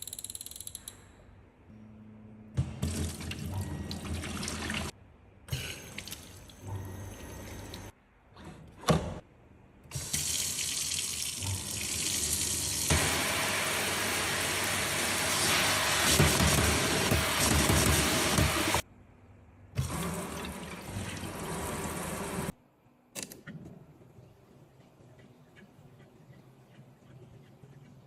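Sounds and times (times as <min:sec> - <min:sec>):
faucet water running into sink: 0:10.0 - 0:18.8.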